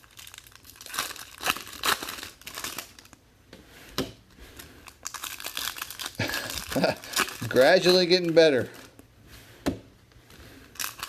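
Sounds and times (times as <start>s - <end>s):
foil wrappers tearing and crinkling: 0.0s - 3.2s, 4.8s - 9.0s, 10.7s - 11.0s.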